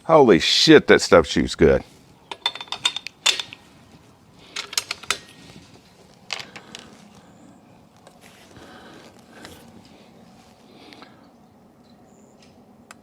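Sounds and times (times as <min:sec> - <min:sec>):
rifle and ammunition clicks and rattles: 0:02.3 - 0:03.7, 0:04.4 - 0:07.3.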